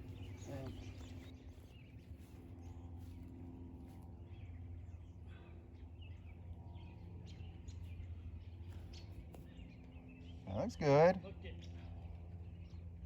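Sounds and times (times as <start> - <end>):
small birds chirping: 0.0 - 3.2
steady low hum: 0.0 - 11.2.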